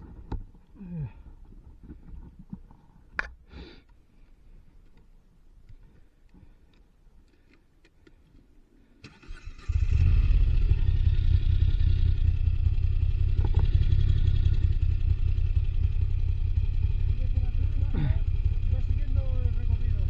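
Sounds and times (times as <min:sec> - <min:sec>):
engine starter cranking: 0:09.0 - 0:10.8
motorcycle engine rumbling: 0:09.1 - 0:20.0.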